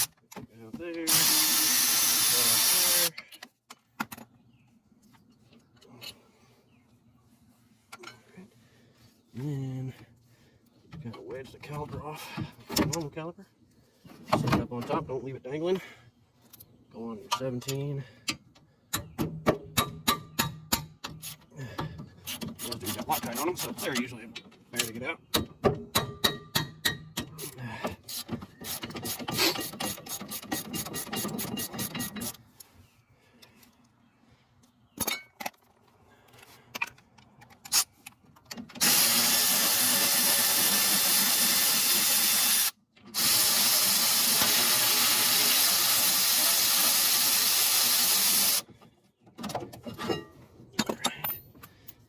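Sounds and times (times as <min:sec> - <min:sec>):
power tool running: 0:01.1 - 0:03.1, 0:38.8 - 0:48.6.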